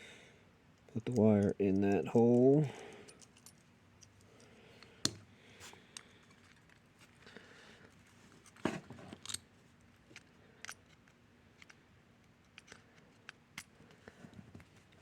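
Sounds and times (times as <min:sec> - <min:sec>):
small clicks and knocks of hands: 0:10.0 - 0:15.0.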